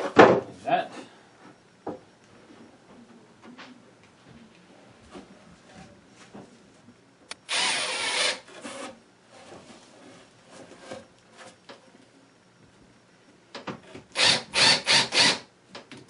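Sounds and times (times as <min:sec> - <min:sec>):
power drill into wood: 0:07.4 - 0:08.5, 0:14.1 - 0:15.5.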